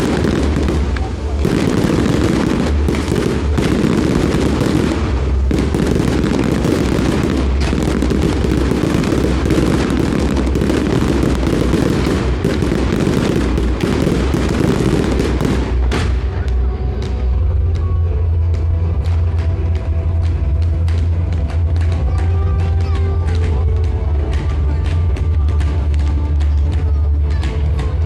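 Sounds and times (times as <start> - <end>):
fireworks bangs and crackling: 0.0 - 28.0.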